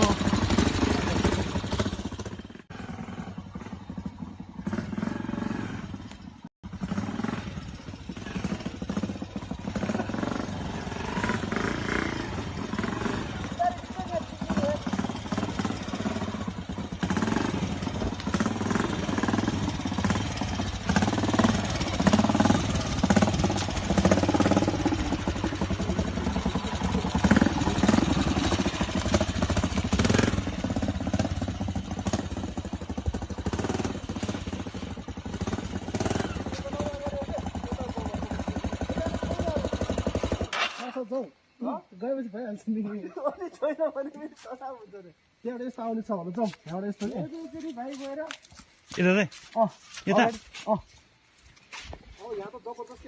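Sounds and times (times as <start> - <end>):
motorcycle engine under load: 0.0 - 41.0.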